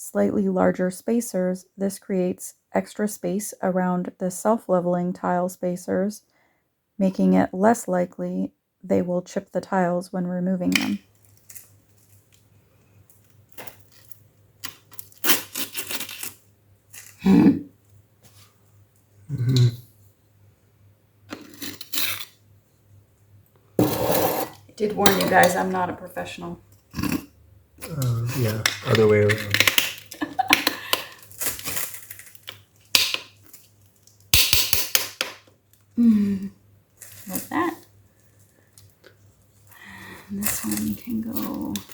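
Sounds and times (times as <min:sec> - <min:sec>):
ceramic tiles clicking and scraping: 0:21.3 - 0:22.3.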